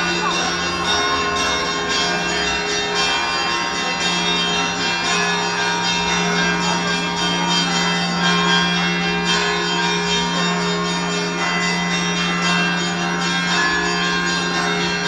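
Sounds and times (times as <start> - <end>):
church bells ringing: 0.0 - 15.0.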